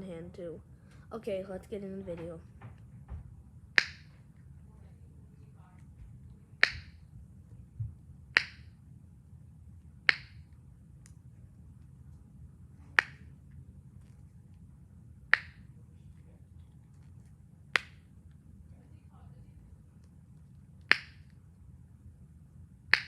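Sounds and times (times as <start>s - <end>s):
dull knock: 2.1s - 3.3s.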